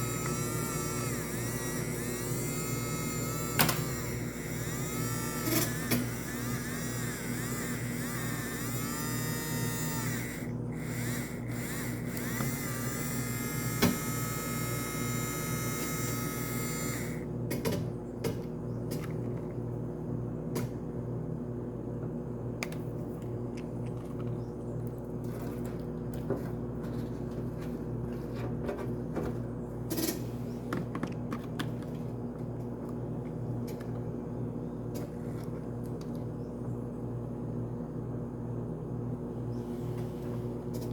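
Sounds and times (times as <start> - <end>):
small electric motor humming: 0.0 - 17.3.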